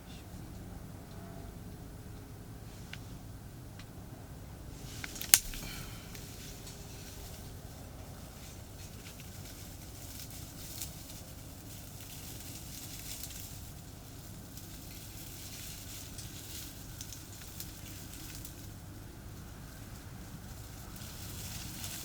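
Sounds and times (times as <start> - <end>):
highway traffic rumble: 0.0 - 22.0
campfire crackling: 4.7 - 22.0.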